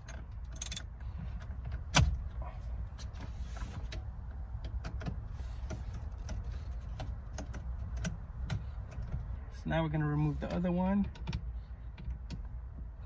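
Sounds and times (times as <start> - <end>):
hand tools clicking and tapping: 0.6 - 0.8.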